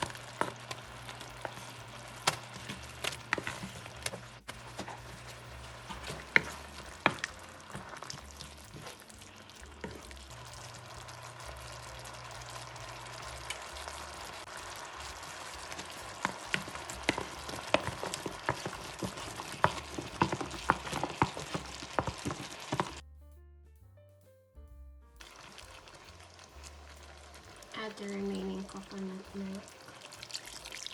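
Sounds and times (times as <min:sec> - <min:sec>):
food sizzling in a frying pan: 0:00.0 - 0:23.0, 0:25.2 - 0:30.9
utensil scraping a pan: 0:00.0 - 0:23.0.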